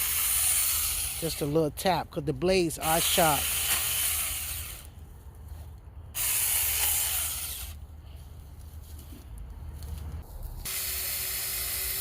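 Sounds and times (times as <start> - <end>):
electric chainsaw cutting: 0.0 - 1.6, 2.7 - 4.9, 6.2 - 7.8, 10.6 - 12.0.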